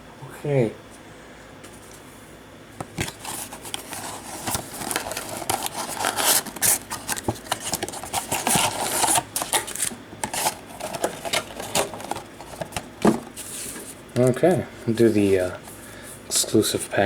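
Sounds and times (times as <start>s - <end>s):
cardboard box rustling and scraping: 2.9s - 15.7s.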